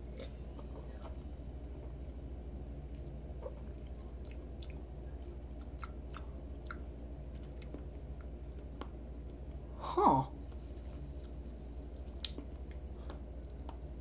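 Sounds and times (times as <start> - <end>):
steady low hum: 0.0 - 14.0
mouth clicks while chewing: 12.1 - 13.8.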